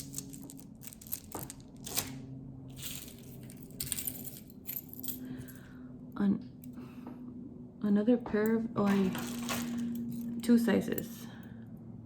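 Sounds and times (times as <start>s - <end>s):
jewelry clicking and rustling: 0.0s - 5.6s, 8.8s - 11.0s
faint steady hum: 0.0s - 12.0s.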